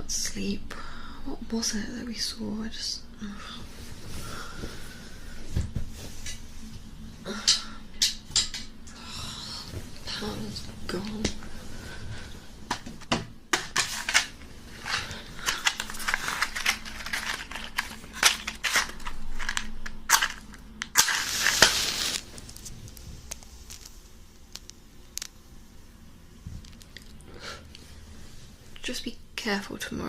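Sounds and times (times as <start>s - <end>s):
handling clicks and crinkles: 13.5s - 25.4s
loud hiss: 20.9s - 22.4s.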